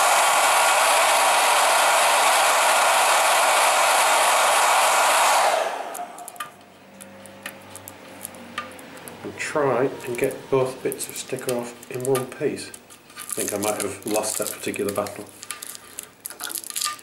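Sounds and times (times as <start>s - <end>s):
hot-air tool blowing: 0.0s - 6.6s.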